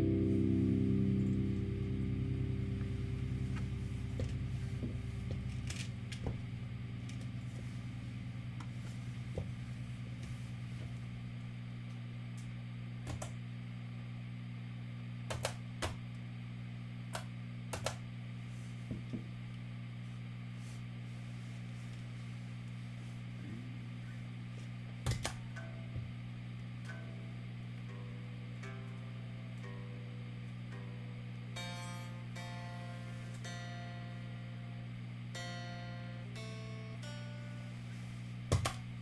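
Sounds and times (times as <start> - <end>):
guitar chord: 0.0 - 10.8, 26.9 - 38.4
low electrical hum: 0.0 - 39.0.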